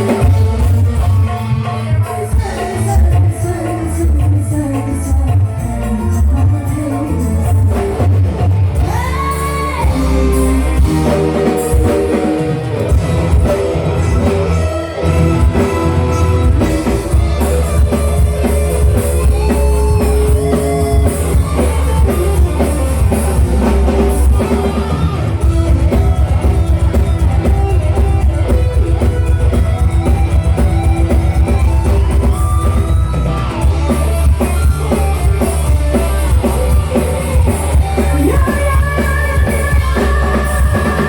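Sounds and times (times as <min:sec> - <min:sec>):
person singing: 0:00.0 - 0:26.4, 0:35.6 - 0:41.0
heavy drum beat: 0:00.0 - 0:41.0
live band music: 0:00.0 - 0:41.0.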